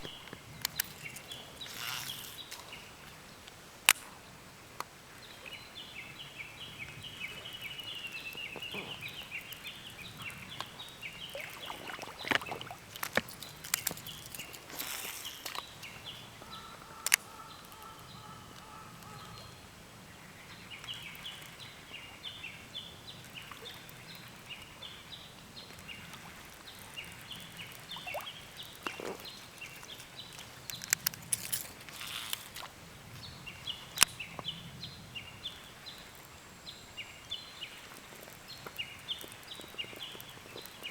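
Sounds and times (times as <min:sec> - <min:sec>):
sharp clicks: 0:17.0 - 0:18.0, 0:29.7 - 0:32.6.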